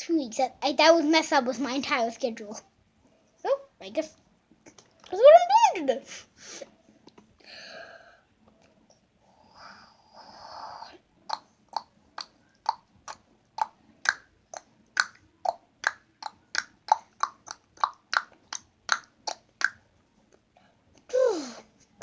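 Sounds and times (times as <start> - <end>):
person making mouth clicks: 11.3 - 20.4.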